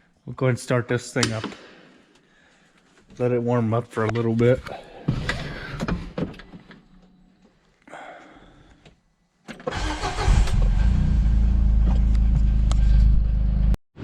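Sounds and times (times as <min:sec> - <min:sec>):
engine cranking and idling: 0:09.7 - 0:13.8.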